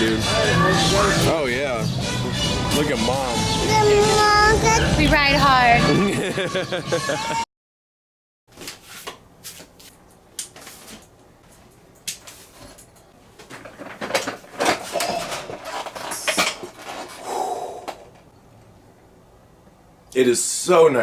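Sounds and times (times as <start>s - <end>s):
clicks and knocks of handled objects: 10.4s - 18.3s.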